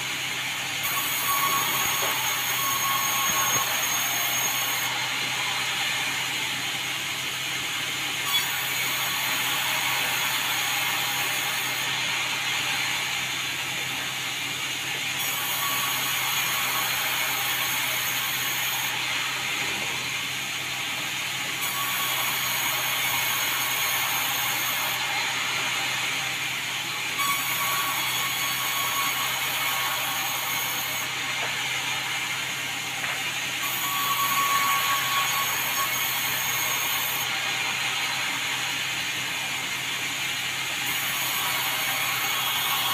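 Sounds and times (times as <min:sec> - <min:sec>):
sawmill sawing timber: 0:00.0 - 0:42.9.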